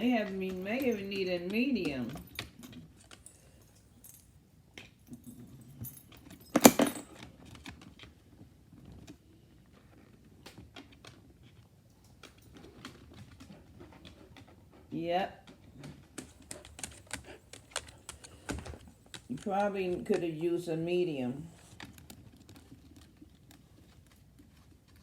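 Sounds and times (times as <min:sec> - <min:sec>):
metallic jingling and clicking: 0:00.0 - 0:04.3, 0:05.0 - 0:07.6, 0:16.1 - 0:20.8
soft rustling: 0:07.3 - 0:25.0.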